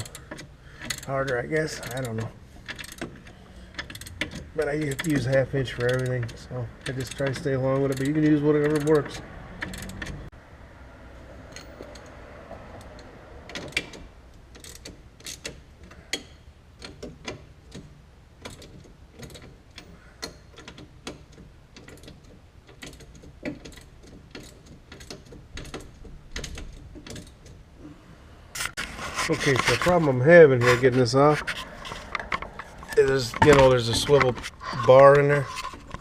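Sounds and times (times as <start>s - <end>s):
socket ratchet clicking: 1.8s - 10.2s
metallic ticks and knocks: 30.6s - 36.0s.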